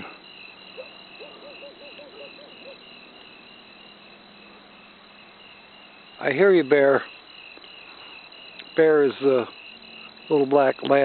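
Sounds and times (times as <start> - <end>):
crickets chirping: 0.0 - 11.0.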